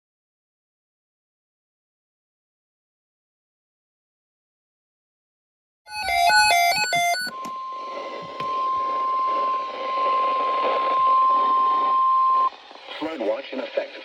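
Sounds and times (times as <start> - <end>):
steady alert tone: 5.9 - 9.7
electronic chime beeps: 5.9 - 12.5
radio static: 6.0 - 14.0.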